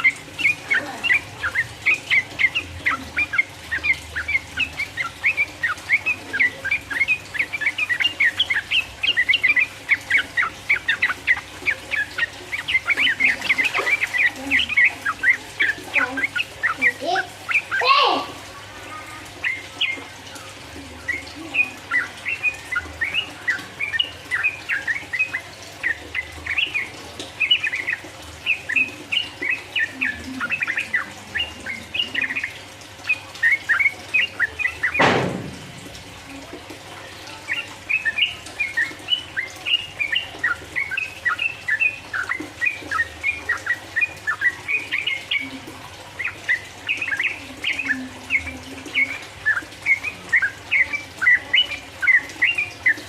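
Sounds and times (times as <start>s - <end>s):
bird singing rapid chirps: 0.0s - 36.4s, 37.0s - 53.0s
sharp thump: 35.0s - 35.7s.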